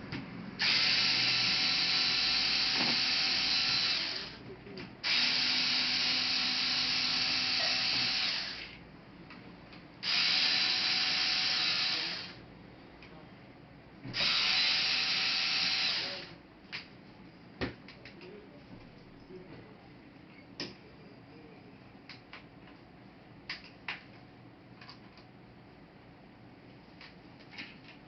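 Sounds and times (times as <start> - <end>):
small electric screwdriver running: 0.6 - 4.4, 5.0 - 8.8, 10.0 - 12.4, 14.2 - 16.3.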